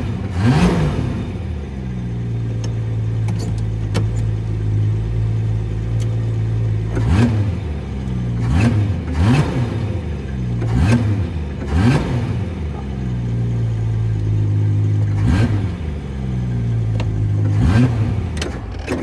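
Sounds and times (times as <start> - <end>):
car engine idling and revving: 0.0 - 19.0.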